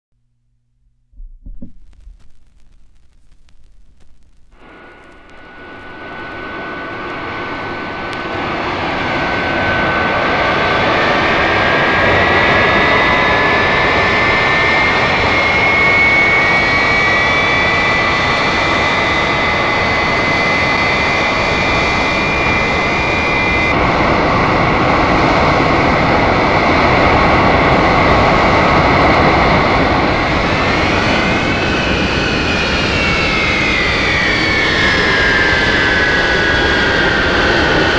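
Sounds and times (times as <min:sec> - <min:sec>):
second rising whine: 0:00.2 - 0:11.8
engine roar with high whine: 0:04.2 - 0:37.9.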